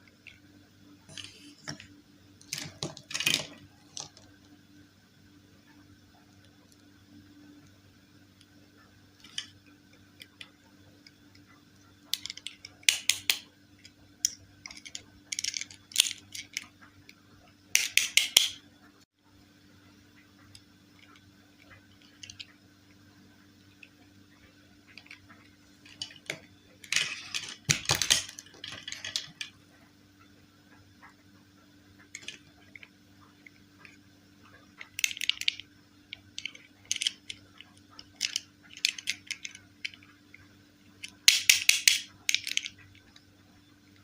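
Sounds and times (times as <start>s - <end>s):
faint steady hum: 0.0s - 44.0s
toys handled with clicks and rustling: 1.1s - 4.5s, 9.2s - 9.6s, 12.1s - 18.6s, 20.5s - 22.6s, 24.9s - 29.6s, 32.0s - 43.2s.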